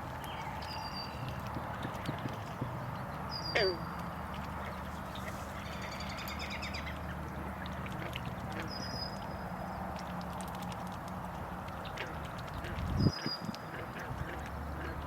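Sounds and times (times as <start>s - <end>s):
small birds chirping: 0.0s - 7.0s, 11.8s - 15.0s.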